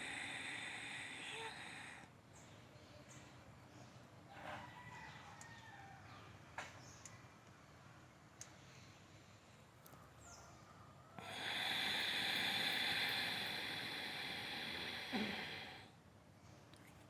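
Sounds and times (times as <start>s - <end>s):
breath hissing through throat: 0.0s - 2.1s, 11.2s - 16.0s.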